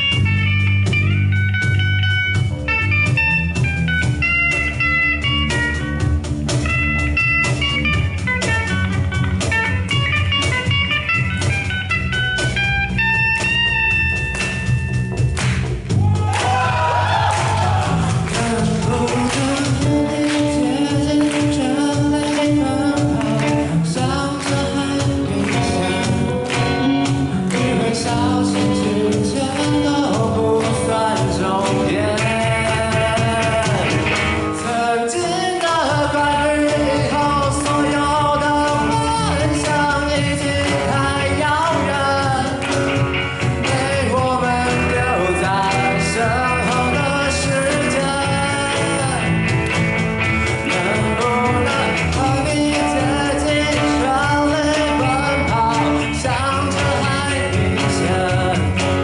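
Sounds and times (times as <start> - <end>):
live pop-rock band: 0.0 - 59.0
person singing: 16.1 - 49.6, 50.4 - 59.0.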